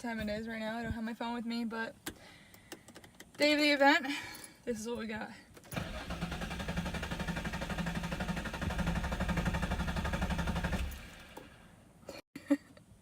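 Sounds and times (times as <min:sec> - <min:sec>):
car engine cranking on starter: 0:05.7 - 0:11.6.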